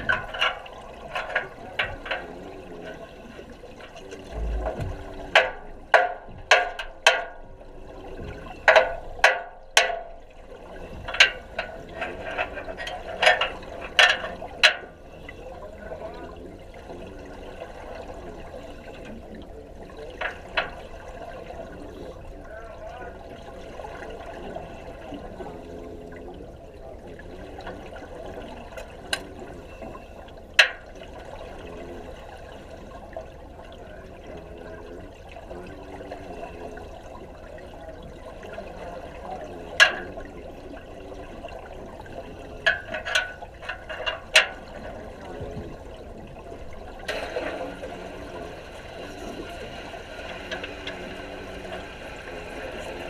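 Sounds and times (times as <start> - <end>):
underwater bubbling water: 0.0 - 53.0.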